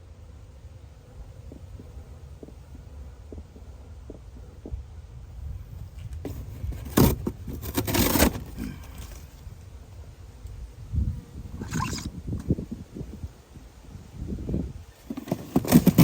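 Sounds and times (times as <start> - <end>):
scraping rustles: 5.7 - 9.7, 14.8 - 16.0.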